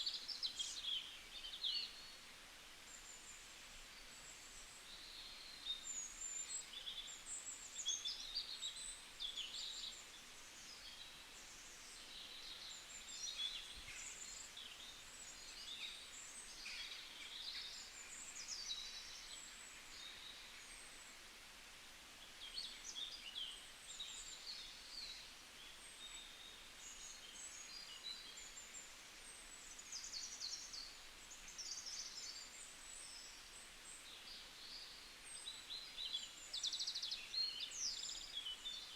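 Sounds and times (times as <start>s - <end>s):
small birds singing and chirping: 0.0s - 21.1s, 22.2s - 38.9s
faint steady hiss: 0.0s - 38.9s.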